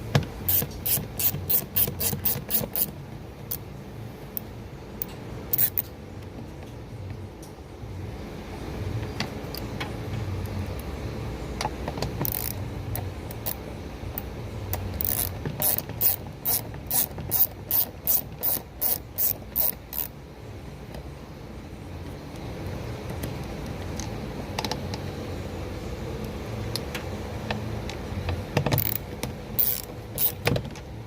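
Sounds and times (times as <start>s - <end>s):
hand ratchet clicking: 0.5s - 2.9s, 4.4s - 5.9s, 12.2s - 13.6s, 14.2s - 20.1s, 28.6s - 29.0s, 29.6s - 30.5s.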